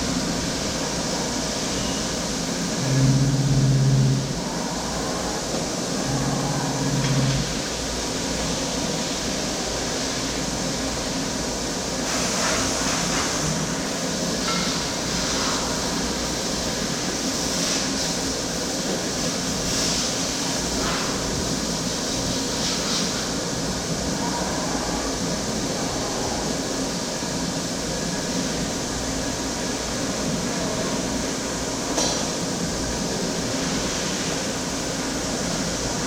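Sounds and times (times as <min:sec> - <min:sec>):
machine mechanical drone: 0:00.0 - 0:09.0.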